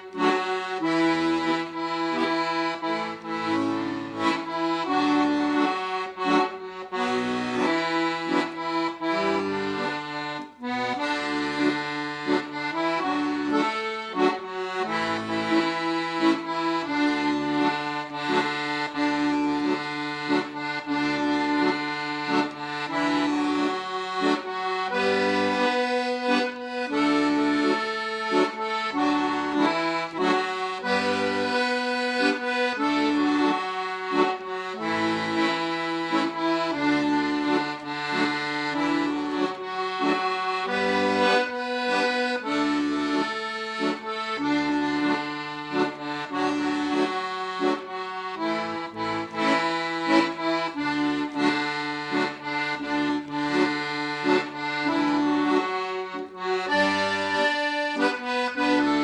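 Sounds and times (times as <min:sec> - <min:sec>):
solo accordion tune: 0:00.0 - 0:59.0.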